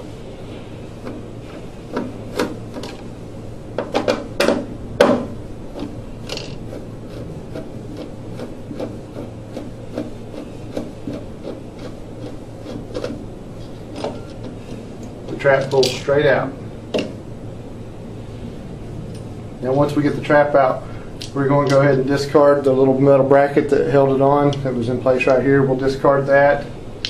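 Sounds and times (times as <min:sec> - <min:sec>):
hands rubbing and knocking on plastic parts: 0:03.8 - 0:16.0.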